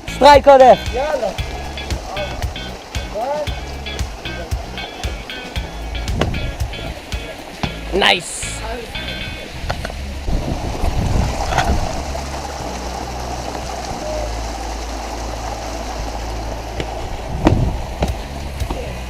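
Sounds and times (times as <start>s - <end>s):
steady rushing rumbling noise: 0.0s - 19.0s
sharp knocks: 16.8s - 18.8s.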